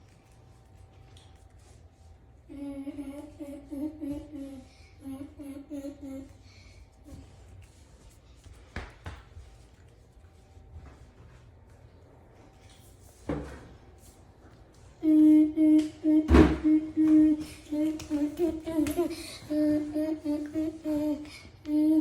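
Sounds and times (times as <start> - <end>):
child humming a tune: 2.5 - 6.5, 15.0 - 22.0.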